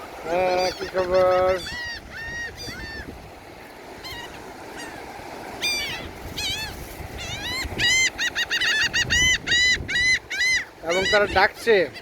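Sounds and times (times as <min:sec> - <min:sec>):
seagulls calling: 0:00.0 - 0:12.0.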